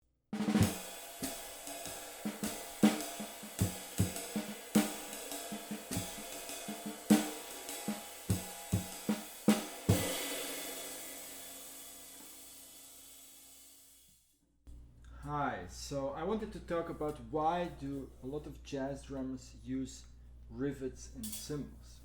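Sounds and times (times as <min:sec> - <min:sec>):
drum kit playing: 0:00.4 - 0:13.6
cymbal wash: 0:00.5 - 0:14.0
cymbal crash ringing: 0:00.6 - 0:13.9.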